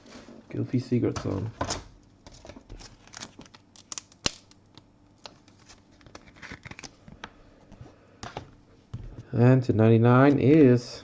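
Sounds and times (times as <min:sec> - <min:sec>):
trading cards rustling and ticking: 0:02.2 - 0:07.4.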